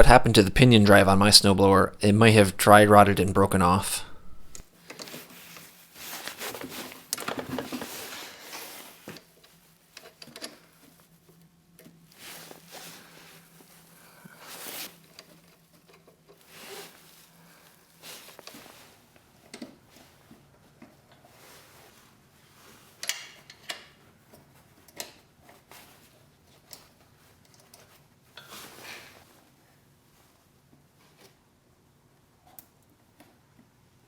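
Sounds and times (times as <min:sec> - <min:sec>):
faint steady hum: 0:00.0 - 0:23.1
rustles scrapes and clicks of handling: 0:04.8 - 0:29.3.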